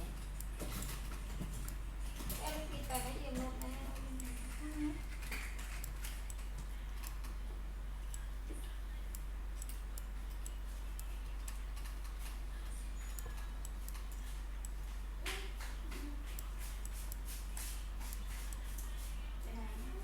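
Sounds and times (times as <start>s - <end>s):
steady low hum: 0.0s - 20.0s
faint irregular clicks: 0.2s - 7.4s.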